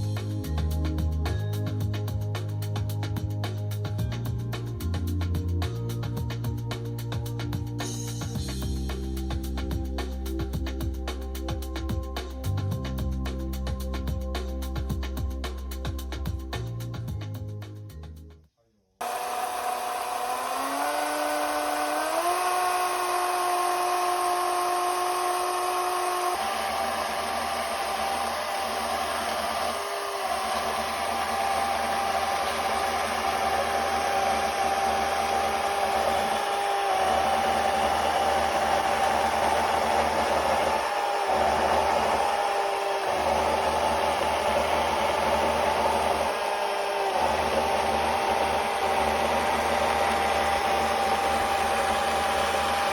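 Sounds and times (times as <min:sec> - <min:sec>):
electric motor whining: 0:19.0 - 0:52.9.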